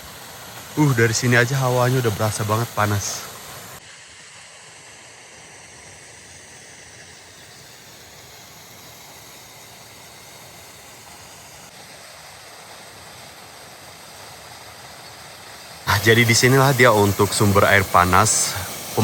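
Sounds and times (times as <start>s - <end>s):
hot spring water rushing: 0.0s - 19.0s.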